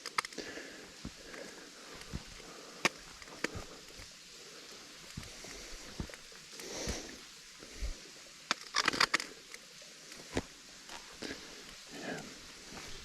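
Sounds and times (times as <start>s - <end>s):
footsteps on wet rock: 1.0s - 4.1s, 5.1s - 7.2s.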